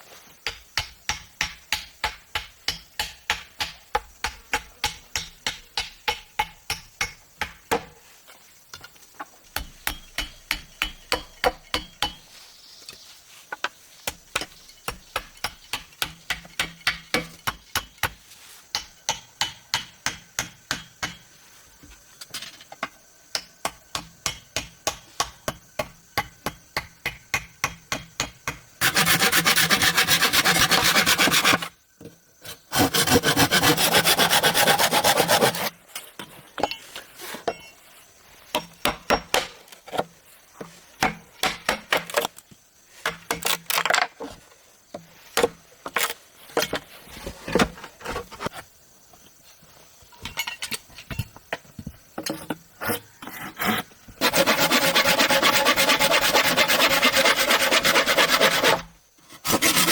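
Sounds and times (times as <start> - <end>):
hand saw cutting wood: 28.8 - 31.7, 32.7 - 35.7, 52.8 - 59.9.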